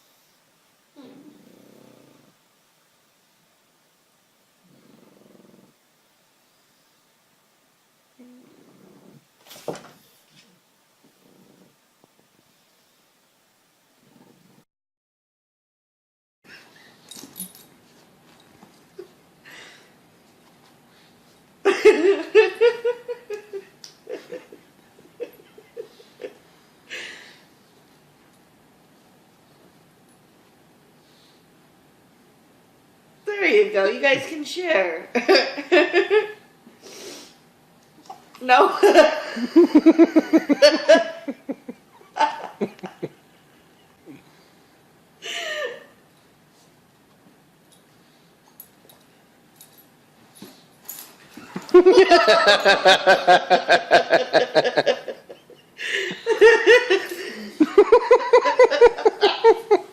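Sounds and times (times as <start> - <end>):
person laughing: 38.7 - 43.2, 51.4 - 59.9.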